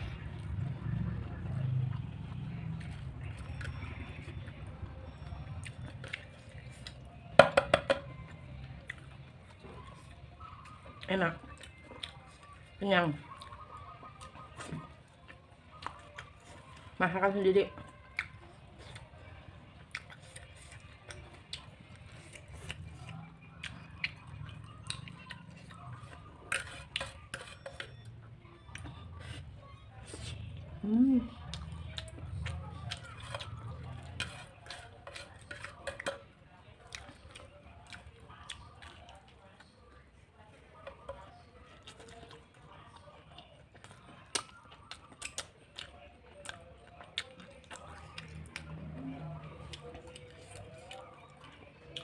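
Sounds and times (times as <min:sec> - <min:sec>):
cutlery clinking and scraping on plate: 0:26.5 - 0:28.1, 0:32.9 - 0:36.3.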